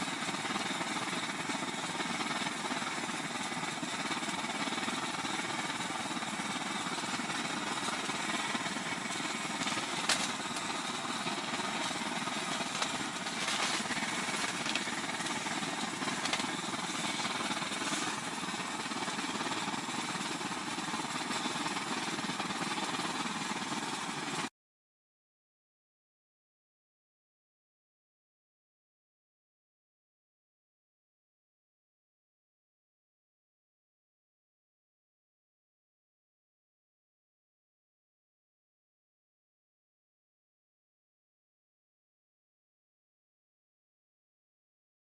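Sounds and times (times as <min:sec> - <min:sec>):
blowtorch hissing: 0:06.8 - 0:20.3.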